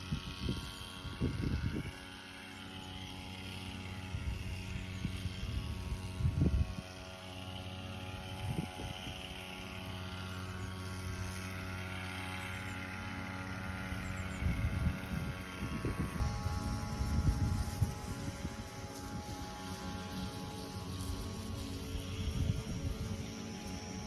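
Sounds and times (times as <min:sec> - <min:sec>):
wind buffeting microphone: 0:00.0 - 0:02.0, 0:04.1 - 0:07.1, 0:08.2 - 0:09.4, 0:13.9 - 0:19.9, 0:22.0 - 0:23.2
motorcycle engine running: 0:00.0 - 0:24.0.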